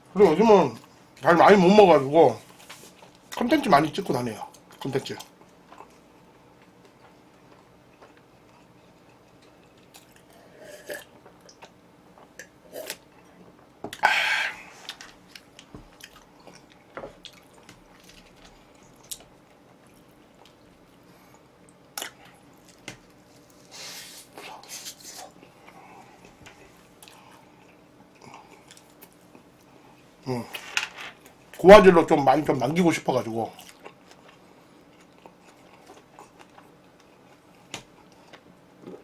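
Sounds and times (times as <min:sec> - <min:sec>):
chewing: 0:05.2 - 0:06.0, 0:06.6 - 0:13.3, 0:14.8 - 0:21.1, 0:33.6 - 0:38.5.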